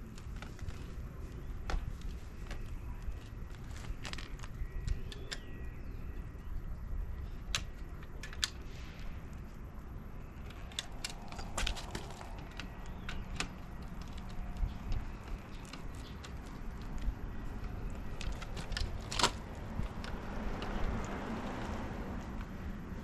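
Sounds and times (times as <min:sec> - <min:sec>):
hand tools clicking and tapping: 0:07.4 - 0:08.6, 0:10.4 - 0:21.3.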